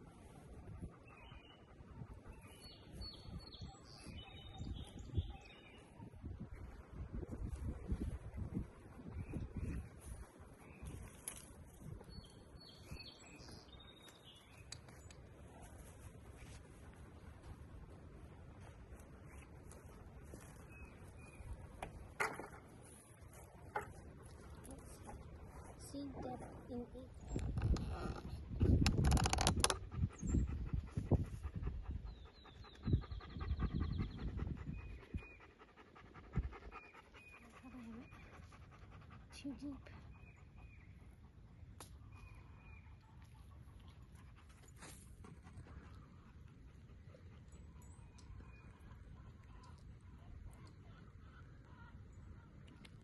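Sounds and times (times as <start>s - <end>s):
wind rumbling on microphone: 0.0s - 36.7s
birds chirping: 19.2s - 44.2s.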